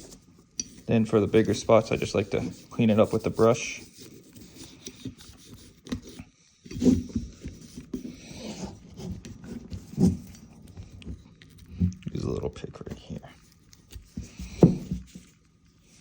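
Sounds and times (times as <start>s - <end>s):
brush scrubbing metal: 0.8s - 4.3s.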